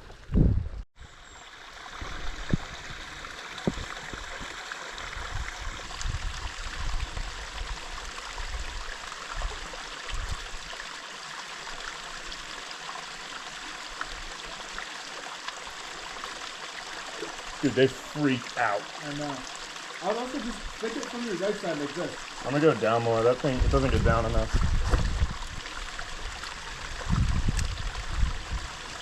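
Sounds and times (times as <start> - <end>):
wind rumbling on microphone: 0.0 - 0.8, 2.0 - 10.7, 23.4 - 29.0
stream water running over rocks: 1.1 - 29.0.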